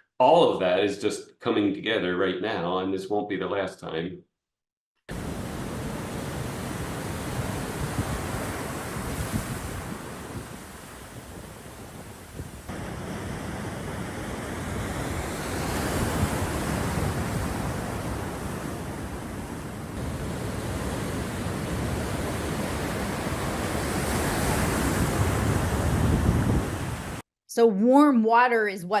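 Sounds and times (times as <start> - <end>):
storm wind: 5.1 - 27.2
surf: 5.1 - 27.2
wind buffeting microphone: 5.2 - 27.2.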